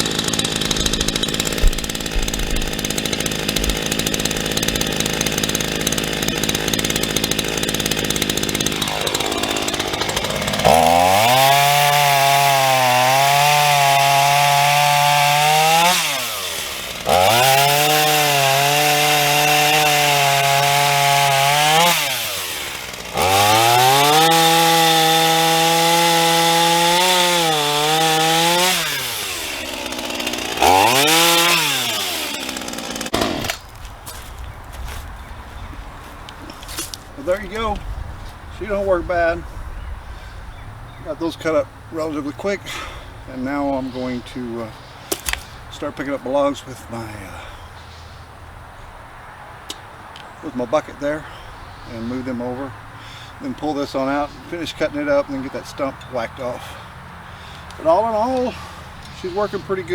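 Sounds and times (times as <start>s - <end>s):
chainsaw cutting logs: 0.0s - 39.5s, 41.0s - 48.2s, 49.7s - 59.9s.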